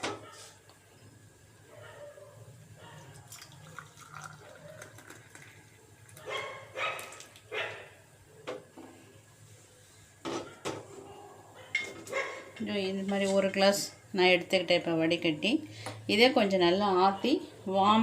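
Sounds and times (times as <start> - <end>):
liquid pouring and splashing: 3.1 - 6.2.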